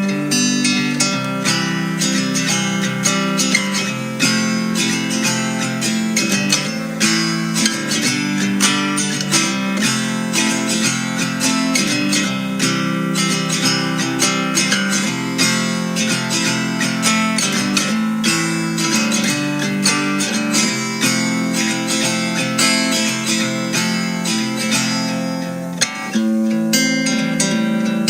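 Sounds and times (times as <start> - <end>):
acoustic guitar music: 0.0 - 28.0.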